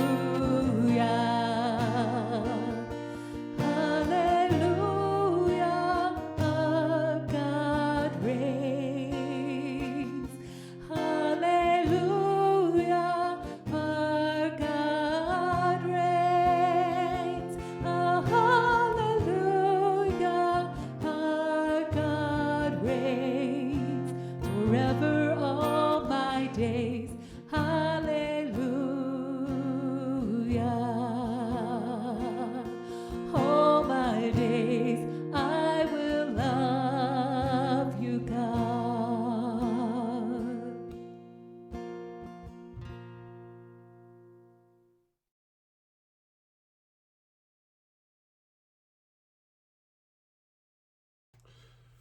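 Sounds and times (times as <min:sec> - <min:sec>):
person singing with vibrato: 0:00.0 - 0:40.8
acoustic guitar: 0:00.0 - 0:44.8.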